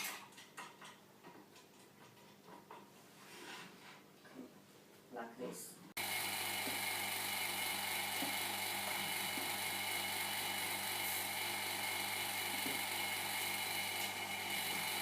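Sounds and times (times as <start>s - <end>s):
vacuum pump humming and whining: 6.0s - 15.0s.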